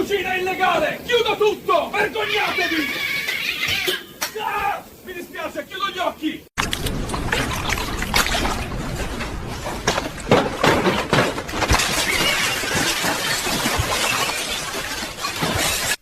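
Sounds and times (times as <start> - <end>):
glass and crockery breaking: 9.7 - 16.0.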